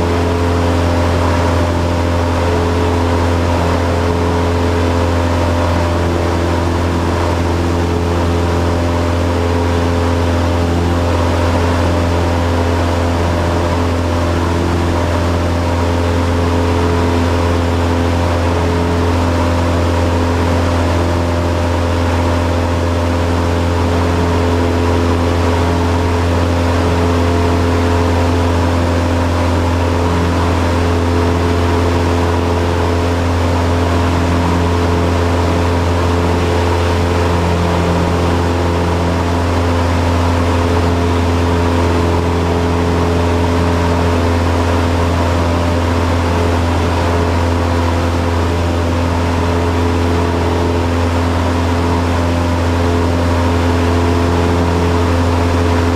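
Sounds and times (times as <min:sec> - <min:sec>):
propeller plane engine droning: 0:00.0 - 0:55.9.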